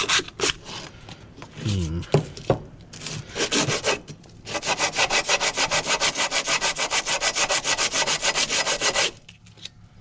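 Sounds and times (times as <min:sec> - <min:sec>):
sandpaper scraping on steel: 0:00.0 - 0:00.6, 0:03.0 - 0:09.2.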